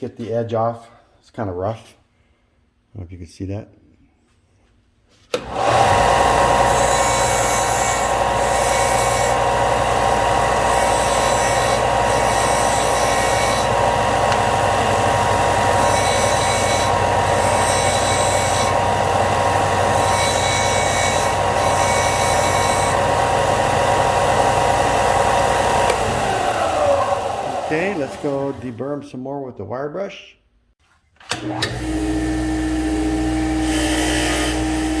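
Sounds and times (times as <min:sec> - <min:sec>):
bench grinder motor running: 0:05.4 - 0:28.8, 0:31.6 - 0:35.0
metal grinding hiss: 0:06.4 - 0:25.9, 0:33.6 - 0:35.0.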